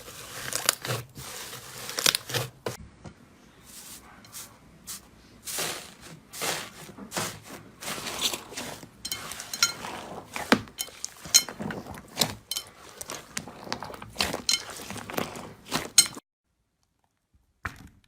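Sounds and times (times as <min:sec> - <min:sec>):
slime squishing: 0:00.0 - 0:02.8, 0:03.7 - 0:16.2.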